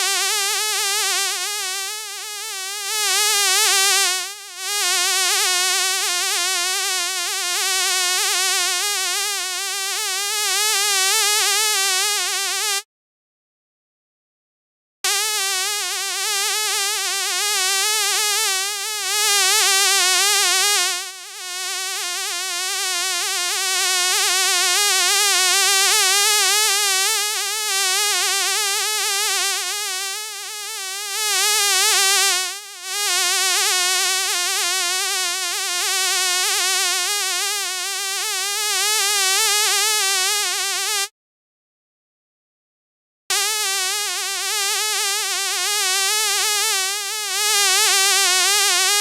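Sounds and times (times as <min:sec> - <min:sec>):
fly buzzing: 0:00.0 - 0:12.8, 0:15.1 - 0:24.5, 0:25.2 - 0:41.1, 0:43.3 - 0:49.0.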